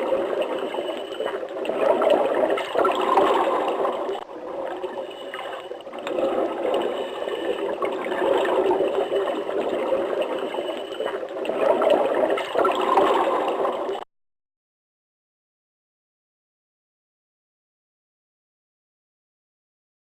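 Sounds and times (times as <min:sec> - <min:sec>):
water running and gurgling: 0:00.0 - 0:14.0.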